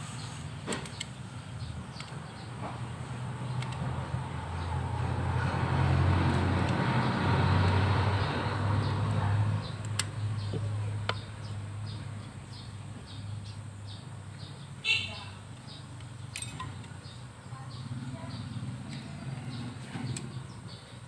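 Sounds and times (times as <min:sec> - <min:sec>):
vehicle engine running: 0:00.0 - 0:14.8, 0:15.4 - 0:21.0
sharp clicks: 0:08.8 - 0:11.3.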